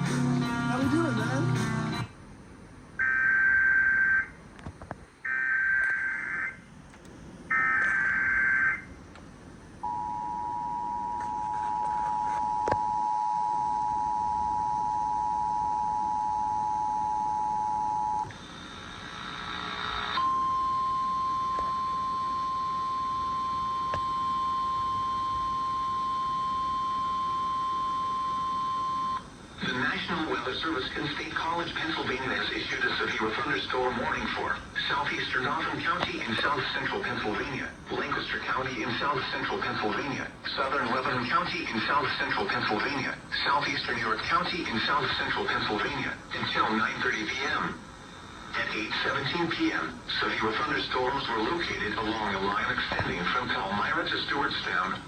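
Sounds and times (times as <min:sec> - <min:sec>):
two-tone attention signal: 0:20.2 - 0:29.2
radio hiss: 0:29.4 - 0:55.0.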